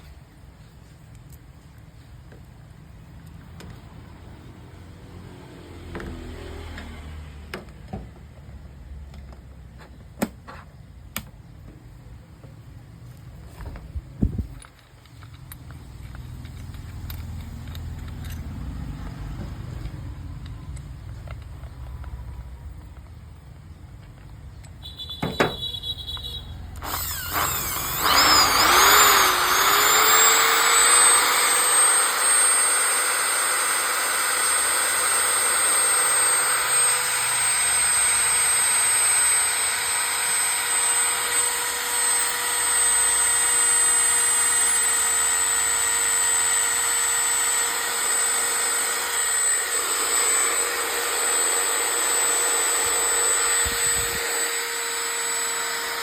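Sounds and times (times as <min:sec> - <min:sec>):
electric drill motor whining: 0:26.8 - 0:56.0.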